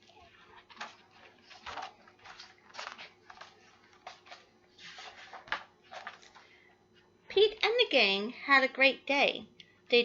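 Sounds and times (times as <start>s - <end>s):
book pages rustling: 0.0s - 6.6s.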